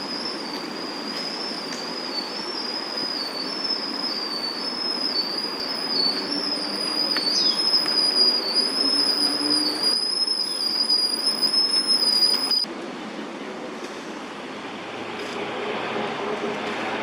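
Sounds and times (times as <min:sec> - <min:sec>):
falling whistle: 0:00.0 - 0:12.7
distant city traffic hum: 0:00.0 - 0:17.0.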